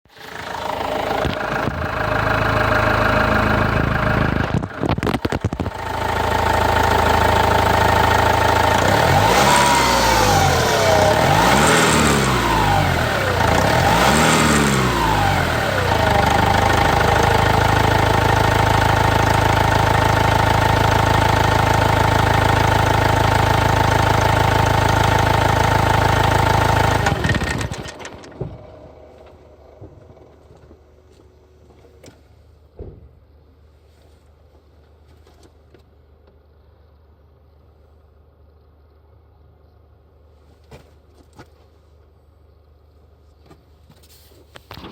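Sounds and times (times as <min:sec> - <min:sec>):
diesel engine revving: 0:00.1 - 0:30.3.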